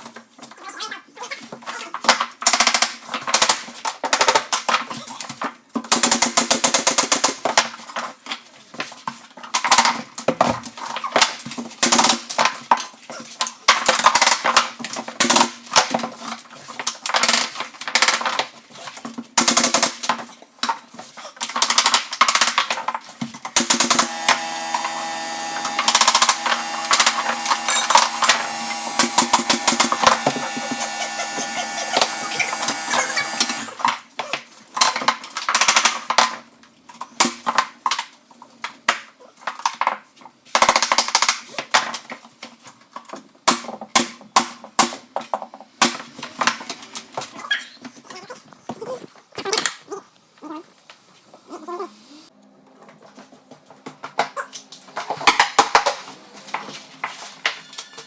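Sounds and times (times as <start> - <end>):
steady hum: 23.8 - 33.8.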